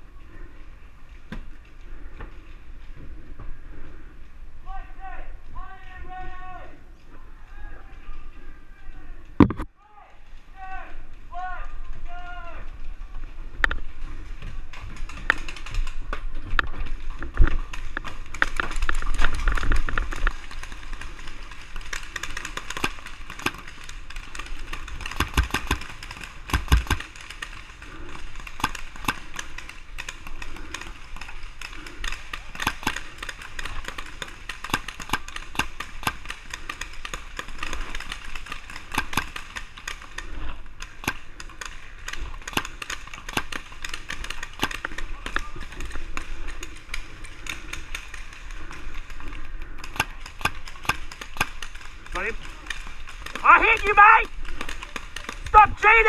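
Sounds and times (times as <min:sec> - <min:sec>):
paintball markers firing: 0:17.2 - 0:56.0.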